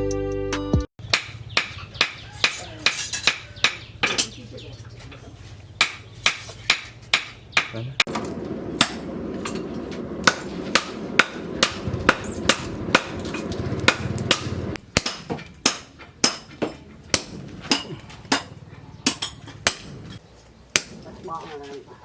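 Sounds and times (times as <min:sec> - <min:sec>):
hammer striking steel: 0:01.0 - 0:04.4, 0:05.8 - 0:21.1
steady low hum: 0:08.0 - 0:15.2.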